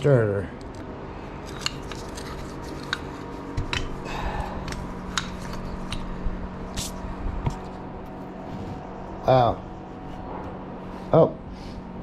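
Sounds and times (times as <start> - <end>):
steady low hum: 0.0 - 12.0
small metal parts clinking: 1.4 - 3.1.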